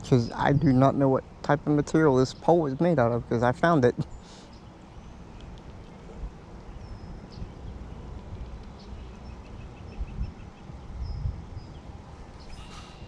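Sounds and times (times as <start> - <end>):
faint bird chirps: 8.7 - 13.0.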